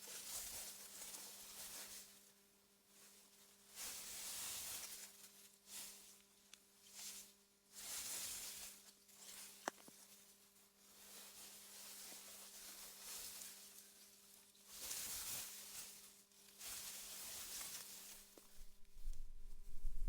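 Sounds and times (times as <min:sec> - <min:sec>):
wind rustling through grass: 0:18.2 - 0:20.0
faint low hum: 0:18.5 - 0:20.0.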